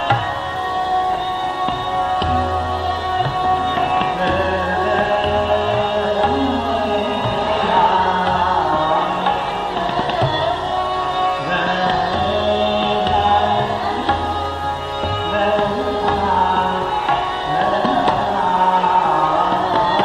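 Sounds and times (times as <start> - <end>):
man singing: 0.0 - 20.0
steady drone: 0.0 - 20.0
tabla: 0.0 - 20.0.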